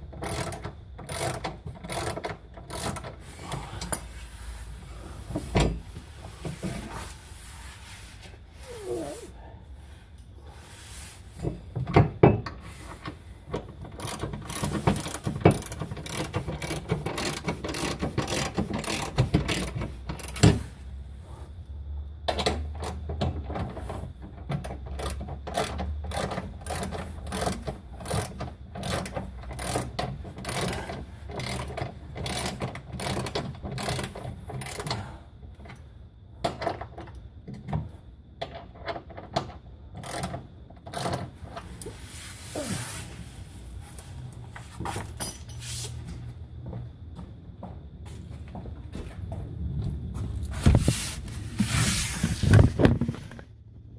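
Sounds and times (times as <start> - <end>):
ratchet wrench clicking: 0.2 - 3.2.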